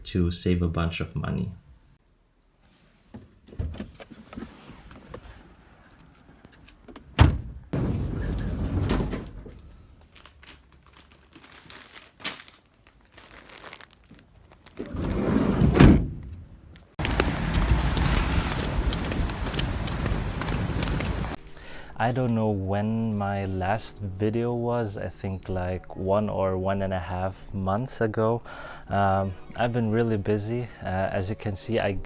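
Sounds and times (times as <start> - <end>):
handling rustling: 7.8 - 21.4.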